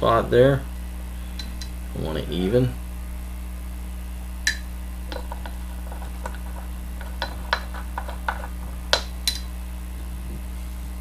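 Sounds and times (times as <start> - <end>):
steady low hum: 0.0 - 11.0
metal tools clicking and tapping: 4.5 - 9.5.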